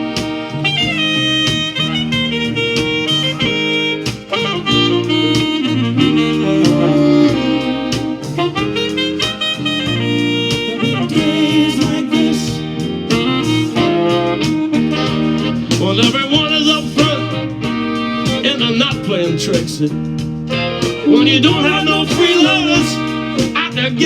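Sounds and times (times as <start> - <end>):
backing band: 0.0 - 24.0
saxophone solo: 0.0 - 24.0.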